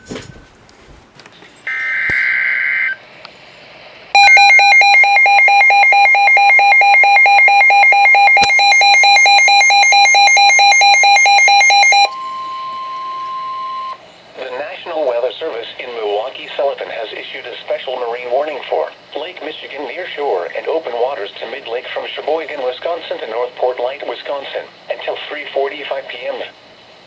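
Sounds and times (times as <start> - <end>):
steady warning tone: 1.7 - 3.0, 4.2 - 26.9
pulsing electronic alarm beeping: 4.2 - 14.0.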